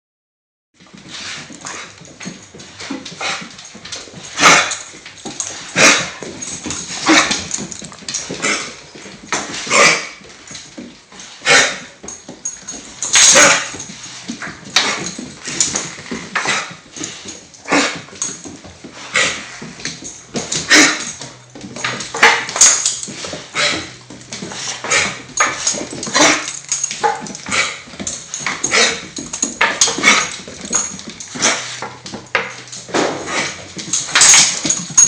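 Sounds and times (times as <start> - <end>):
dog coughing: 4.4 - 4.9, 7.0 - 7.5, 11.4 - 12.0, 17.6 - 18.1, 20.6 - 21.2.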